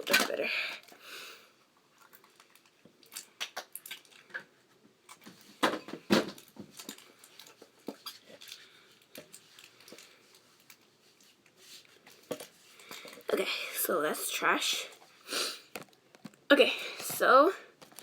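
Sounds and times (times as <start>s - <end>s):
plastic clicking and crinkling: 1.9s - 13.3s, 15.7s - 16.4s, 17.0s - 18.0s.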